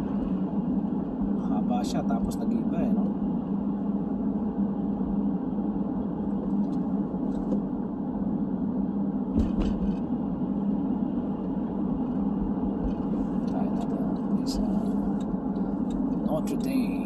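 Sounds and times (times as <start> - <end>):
car road and engine hum: 0.0 - 17.0
brief knock: 9.4 - 10.0.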